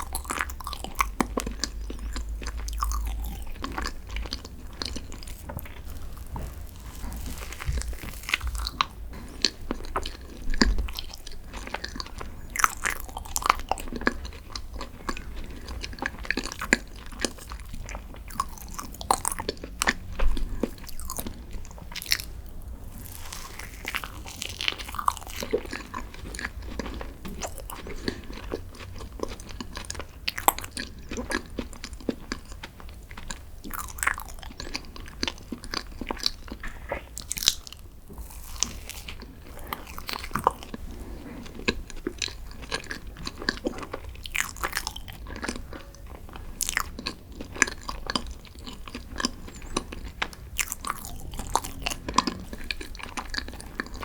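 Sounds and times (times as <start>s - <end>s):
person chewing with crunches: 0.0s - 54.0s.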